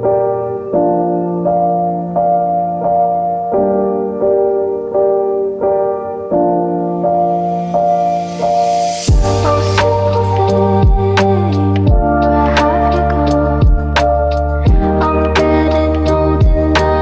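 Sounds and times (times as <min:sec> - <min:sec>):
keyboard chords: 0:00.0 - 0:17.0.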